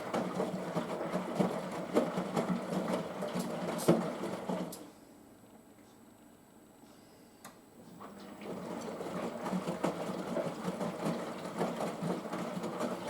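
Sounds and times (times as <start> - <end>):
laundry sloshing in washing machine: 0.0 - 4.9, 7.9 - 13.0.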